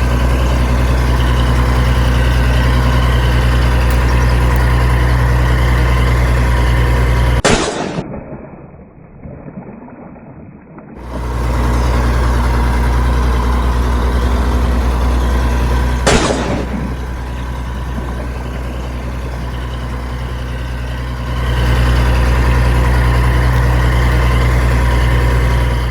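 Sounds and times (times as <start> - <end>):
heavy vehicle engine running: 0.0 - 8.0, 11.0 - 25.9
sharp engine burst: 11.0 - 19.8.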